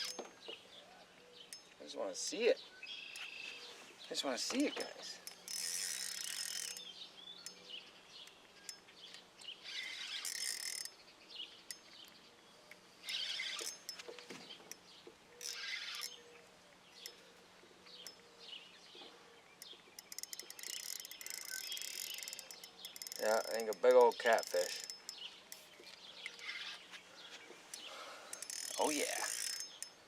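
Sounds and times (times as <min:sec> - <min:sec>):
fishing reel ratcheting: 0:00.0 - 0:00.4, 0:04.6 - 0:07.7, 0:09.4 - 0:11.0, 0:13.0 - 0:14.1, 0:15.4 - 0:16.3, 0:19.6 - 0:26.8, 0:27.7 - 0:30.0
birds chirping: 0:00.0 - 0:30.0.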